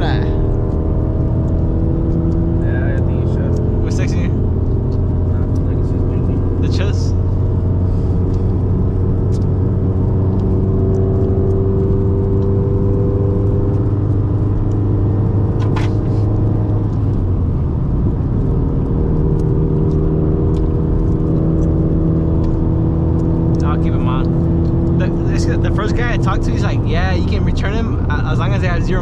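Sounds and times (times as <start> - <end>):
car engine droning: 0.0 - 29.0
road noise: 0.0 - 29.0
sharp click: 15.5 - 17.1.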